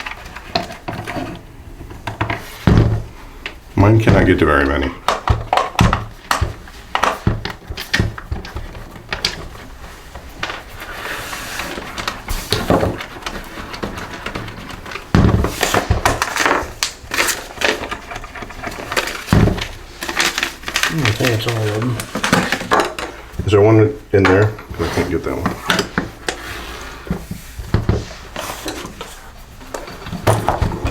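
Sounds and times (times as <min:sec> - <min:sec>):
hand tools clicking on plastic: 0:03.4 - 0:11.0, 0:11.6 - 0:23.6.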